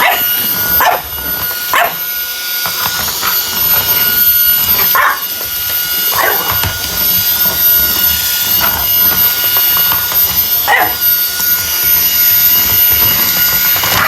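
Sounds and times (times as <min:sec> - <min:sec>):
dog barking: 0:00.0 - 0:02.0, 0:04.9 - 0:05.3, 0:06.1 - 0:06.6, 0:10.6 - 0:11.1
vacuum cleaner running: 0:00.0 - 0:14.0.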